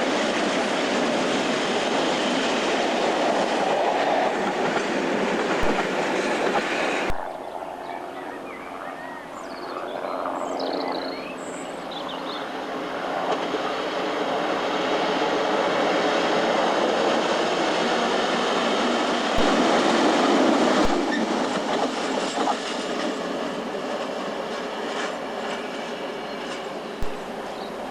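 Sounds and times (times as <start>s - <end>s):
freight train rumbling and clattering: 0.0s - 8.6s, 10.1s - 27.9s
sharp knocks: 5.6s - 7.4s.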